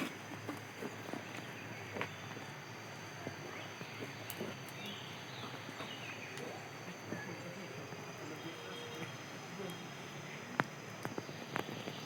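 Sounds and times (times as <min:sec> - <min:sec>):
footsteps on path: 0:00.0 - 0:02.6
faint chirping calls: 0:00.0 - 0:12.0
steady high-pitched whine: 0:00.0 - 0:12.0.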